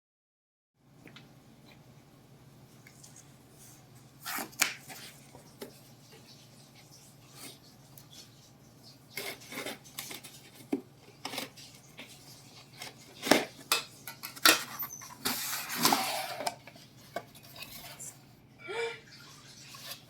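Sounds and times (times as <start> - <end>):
scraping or rustling: 2.9 - 18.2.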